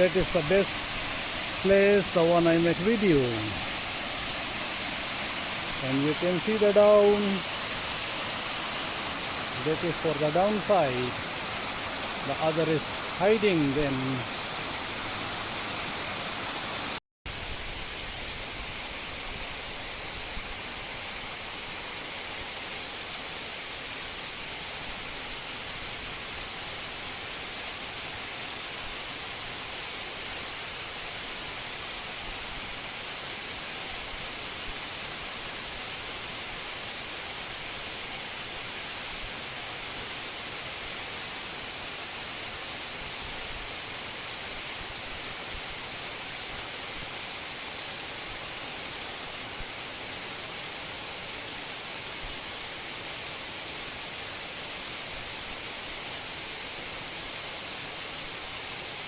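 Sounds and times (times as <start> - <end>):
waterfall rushing: 0.0 - 17.0.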